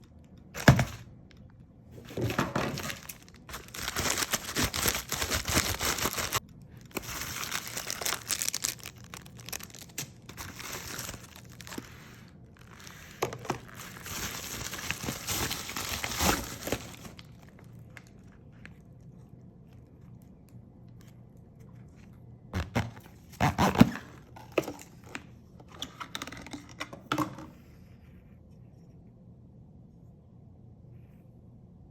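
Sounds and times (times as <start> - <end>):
packaging tearing and crinkling: 2.8 - 18.2.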